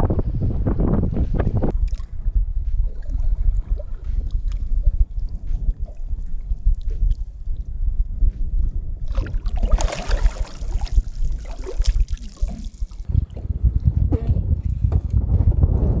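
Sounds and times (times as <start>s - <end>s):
wind on microphone: 0.0s - 16.0s
water splashing and trickling: 9.1s - 14.1s.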